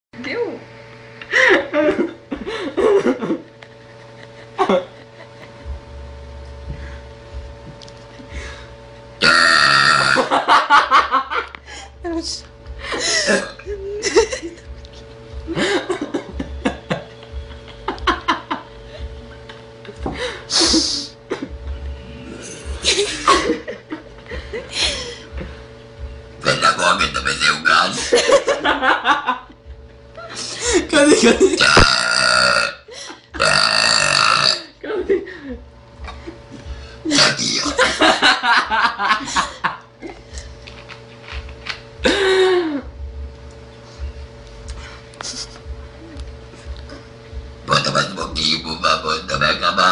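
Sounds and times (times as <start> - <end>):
people talking: 0.2 - 0.6, 26.5 - 28.1
people chuckling: 1.2 - 5.9, 12.8 - 21.6, 22.4 - 25.6, 28.0 - 31.8, 34.8 - 40.5, 42.0 - 42.9, 45.2 - 47.1
people laughing and giggling: 1.3 - 5.9, 10.2 - 21.6, 22.6 - 25.6, 28.0 - 31.6, 34.8 - 40.5.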